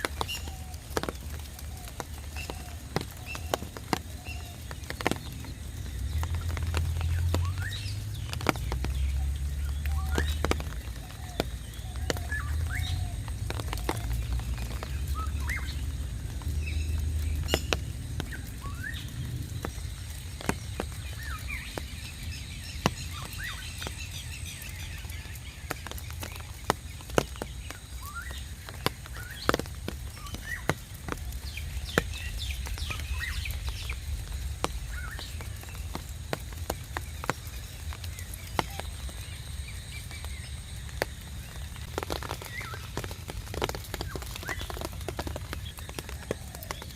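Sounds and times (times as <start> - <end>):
rain dripping: 0.0 - 46.9
small birds chirping: 0.0 - 46.9
low rumble: 5.3 - 22.7.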